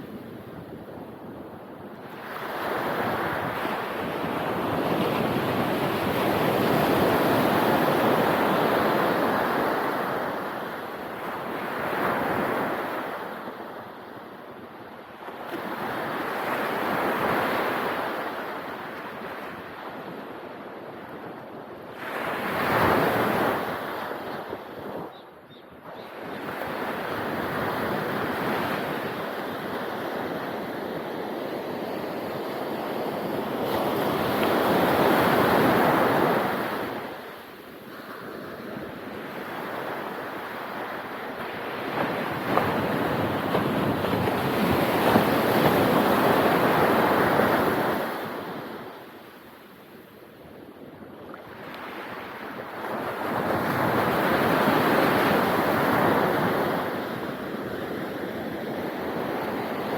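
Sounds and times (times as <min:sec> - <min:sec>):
ocean waves breaking on beach: 0:00.0 - 0:25.1, 0:25.8 - 0:59.9
wind on microphone: 0:41.4 - 0:48.9.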